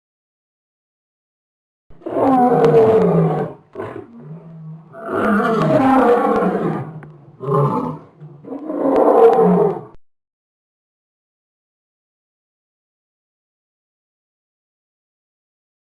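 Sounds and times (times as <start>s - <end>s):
elephant roaring: 2.0s - 10.0s.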